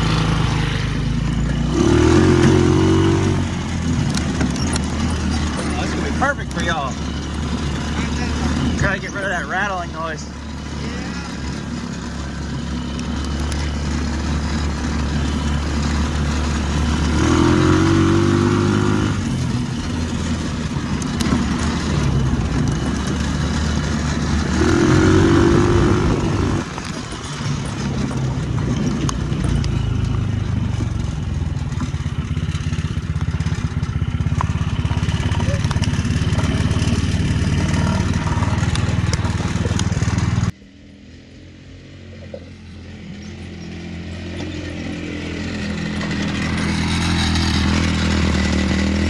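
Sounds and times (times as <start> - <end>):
go-kart engine revving: 0.0 - 49.0
rattle: 45.6 - 49.0.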